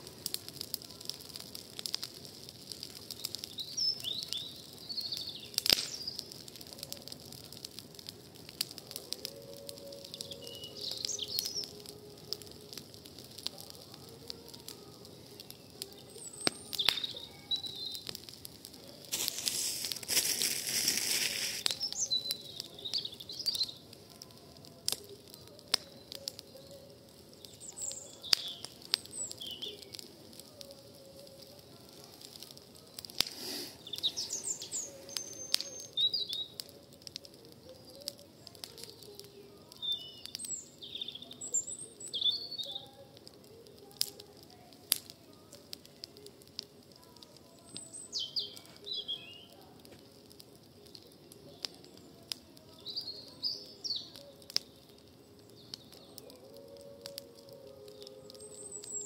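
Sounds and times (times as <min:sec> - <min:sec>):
wood fire crackling and popping: 0:00.0 - 0:59.0
birds chirping: 0:02.8 - 0:06.5, 0:09.4 - 0:12.7, 0:13.8 - 0:24.4, 0:25.2 - 0:31.6, 0:32.2 - 0:36.8, 0:37.6 - 0:43.8, 0:47.0 - 0:59.0.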